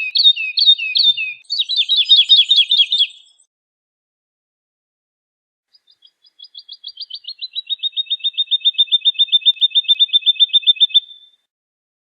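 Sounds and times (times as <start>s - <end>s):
woodlark singing: 0.0s - 3.5s, 5.7s - 11.5s.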